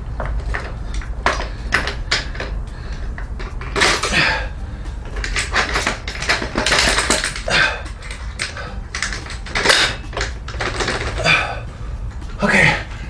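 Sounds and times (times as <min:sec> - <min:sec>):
metal parts knocking and scraping: 0:00.2 - 0:04.4, 0:05.0 - 0:11.5.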